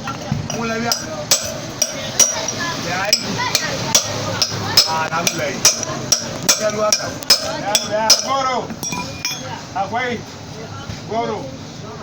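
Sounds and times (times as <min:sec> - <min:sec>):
hammer striking metal: 0:00.1 - 0:09.6.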